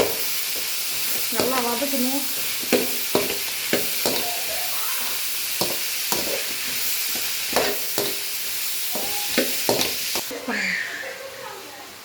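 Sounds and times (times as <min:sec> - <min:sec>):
spoon scraping pan: 0:00.0 - 0:04.3, 0:05.5 - 0:10.3
vegetables sizzling in oil: 0:00.0 - 0:11.2.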